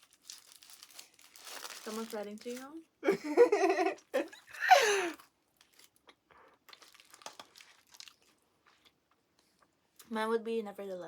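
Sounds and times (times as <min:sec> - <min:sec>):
light crinkling: 0:00.0 - 0:02.9, 0:05.1 - 0:09.7
person chewing and crunching food: 0:05.1 - 0:10.1.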